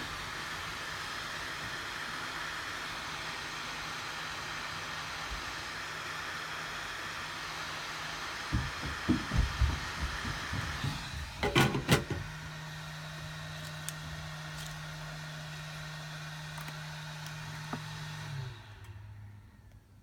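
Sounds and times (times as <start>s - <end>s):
heat gun hissing: 0.0s - 19.5s
handling knocks and bumps: 8.5s - 12.3s.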